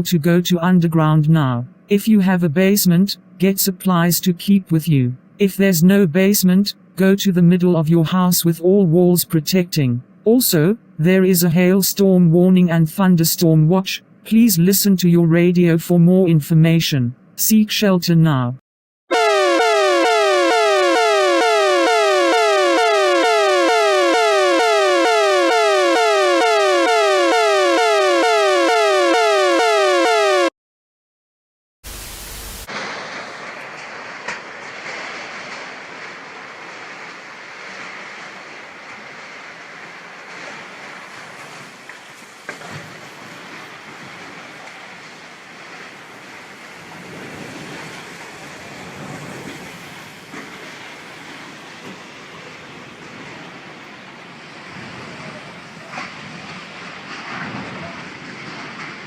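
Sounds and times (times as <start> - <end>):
emergency alert alarm tone: 19.1 - 30.5
burst of static: 31.9 - 36.3
rushing storm wind: 32.6 - 59.0.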